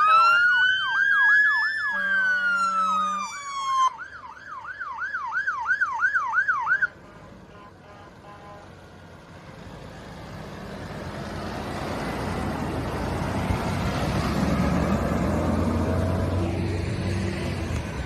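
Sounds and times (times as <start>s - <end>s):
vehicle approaching: 6.5s - 18.0s.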